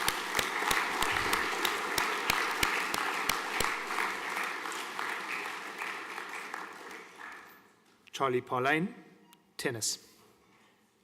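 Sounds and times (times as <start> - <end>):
audience applauding: 0.0 - 7.7.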